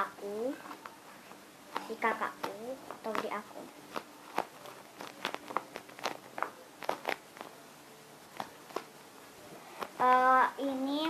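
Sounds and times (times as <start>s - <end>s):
squishy toys crackling: 3.0s - 7.5s.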